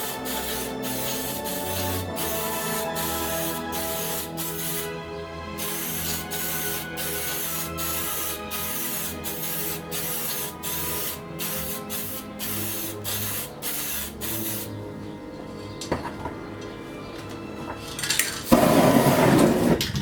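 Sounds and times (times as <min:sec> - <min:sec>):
spray-paint can hissing: 0:00.0 - 0:04.9, 0:05.6 - 0:14.7.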